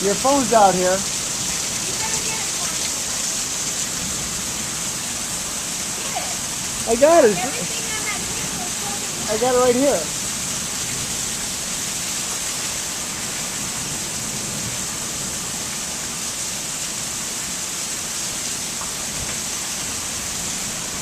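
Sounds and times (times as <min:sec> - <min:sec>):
heavy rain pouring: 0:00.0 - 0:21.0.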